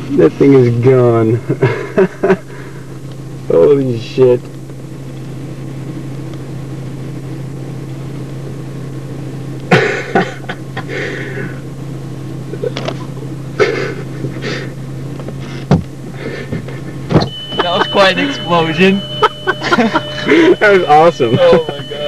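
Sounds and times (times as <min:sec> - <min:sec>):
car idling hum: 0:00.0 - 0:22.0.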